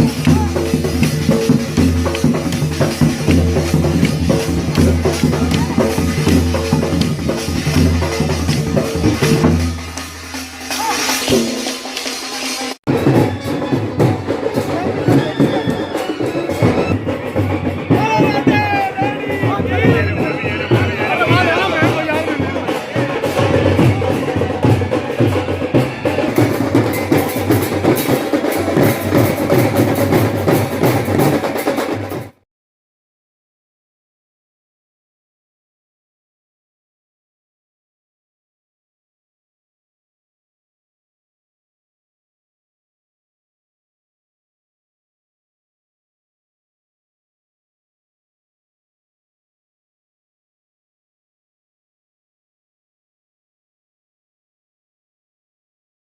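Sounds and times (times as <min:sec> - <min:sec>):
loud music with drum beat: 0:00.0 - 0:32.4.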